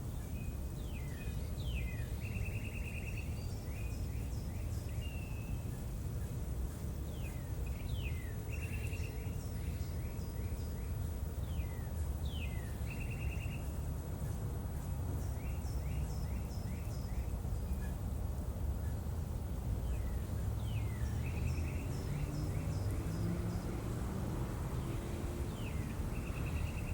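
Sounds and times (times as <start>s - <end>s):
songbird singing with trill: 0.0s - 5.9s, 7.0s - 14.4s, 15.1s - 18.1s, 18.7s - 26.9s
low outdoor rumble: 5.8s - 26.9s.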